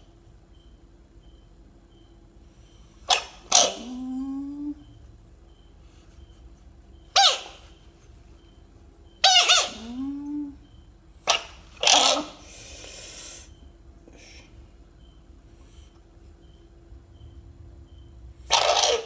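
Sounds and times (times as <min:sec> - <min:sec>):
frog squealing calls: 0:03.1 - 0:04.9, 0:07.2 - 0:07.7, 0:09.2 - 0:10.6, 0:11.2 - 0:13.4, 0:18.5 - 0:19.0.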